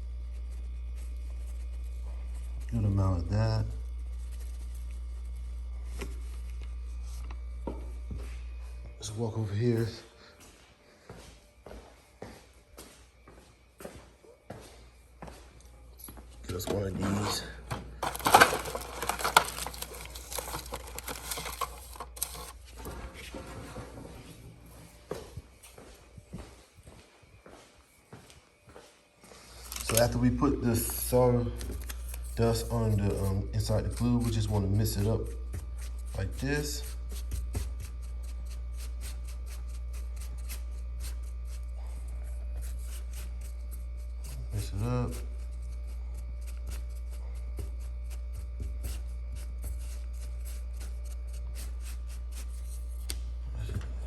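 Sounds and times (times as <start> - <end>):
steady low hum: 0.0 - 54.0.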